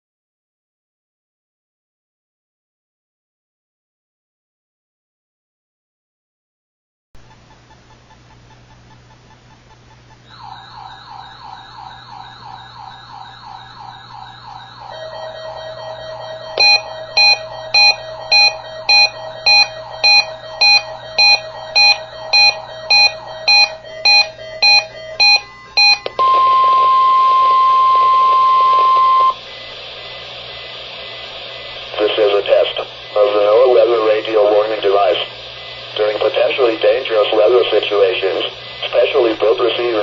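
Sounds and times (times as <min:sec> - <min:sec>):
steady warning alarm tone: 0:10.2 - 0:40.0
warbling alert tone: 0:10.3 - 0:26.2
loud electronic beeping: 0:10.3 - 0:40.0.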